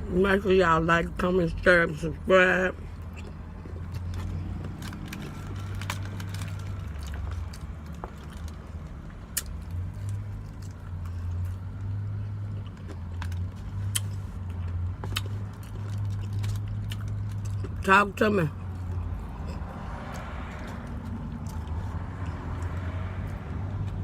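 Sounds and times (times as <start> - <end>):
person chewing and lip-smacking: 3.0 - 7.6, 9.2 - 17.9.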